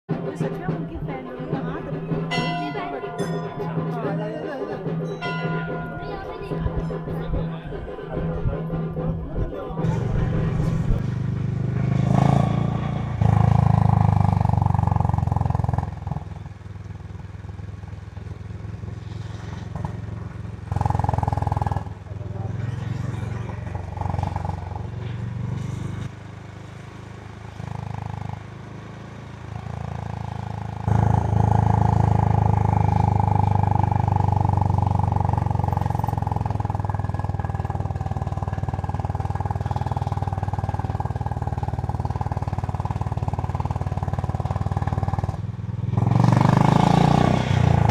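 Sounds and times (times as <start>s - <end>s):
motorcycle engine running: 0.1s - 47.9s.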